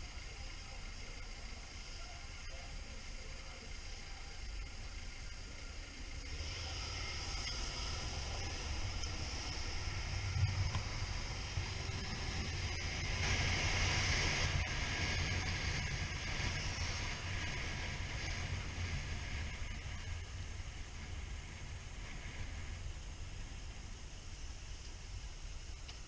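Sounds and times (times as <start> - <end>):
motorcycle engine rumble: 0.0 - 26.0
wind and road rush: 6.2 - 26.0.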